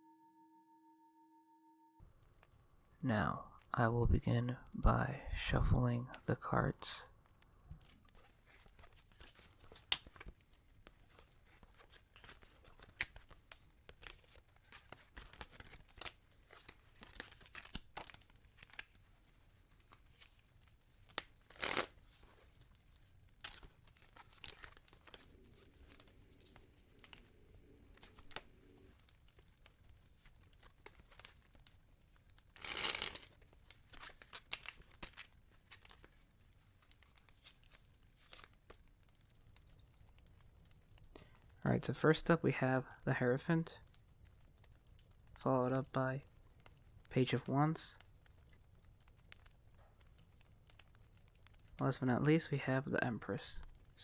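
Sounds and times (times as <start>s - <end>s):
cards riffling: 7.8s - 38.8s
cards shuffled by hand: 7.8s - 38.9s.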